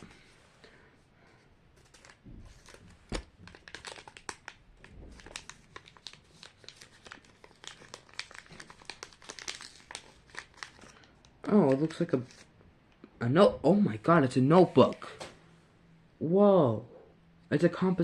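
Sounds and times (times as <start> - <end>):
plastic wrapper crinkling and tearing: 1.8 - 12.5.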